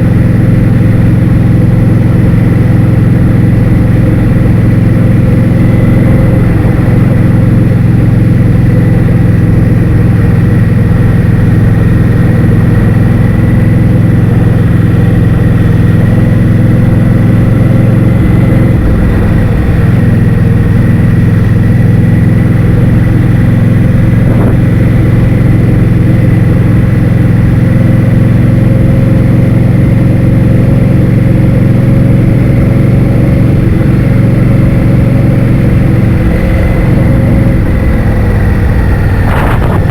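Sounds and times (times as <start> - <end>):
engine drone: 0.0 - 39.9
wind noise on microphone: 17.9 - 27.1, 35.7 - 39.9
faint steady whine: 33.6 - 39.9.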